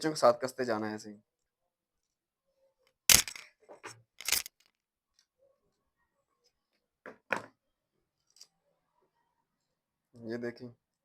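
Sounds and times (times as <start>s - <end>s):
small parts and tools clattering: 3.1s - 4.8s.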